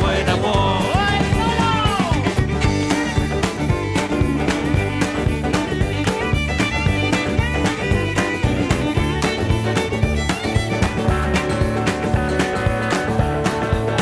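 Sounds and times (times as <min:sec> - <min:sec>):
bass line: 0:00.0 - 0:14.0
fiddle: 0:00.0 - 0:14.0
steady beat: 0:00.0 - 0:14.0.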